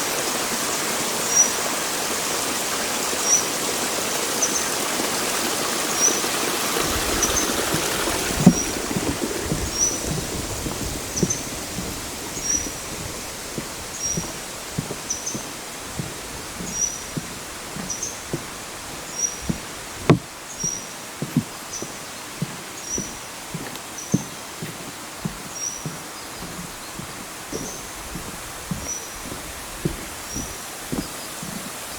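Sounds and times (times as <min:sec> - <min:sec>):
footsteps on path: 0:06.7 - 0:31.9.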